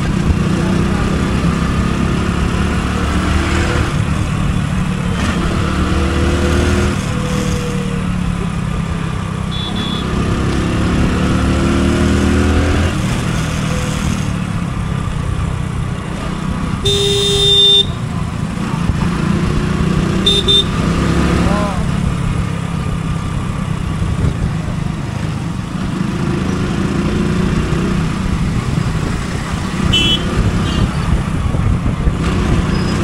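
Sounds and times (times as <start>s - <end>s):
vehicle horn honking: 9.5s - 10.2s, 16.8s - 18.0s, 20.2s - 20.8s, 29.9s - 30.9s
motorcycle engine running: 13.0s - 33.0s.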